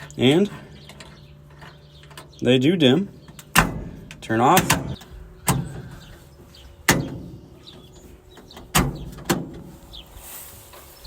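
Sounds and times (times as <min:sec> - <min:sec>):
sharp clunks: 0:03.3 - 0:06.1, 0:06.8 - 0:09.7.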